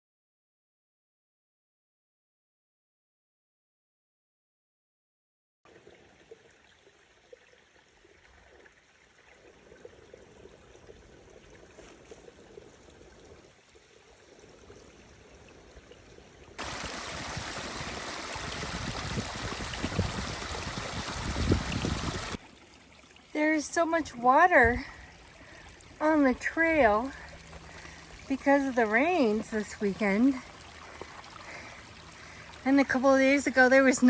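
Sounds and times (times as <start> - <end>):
stream of water flowing: 5.7 - 34.0.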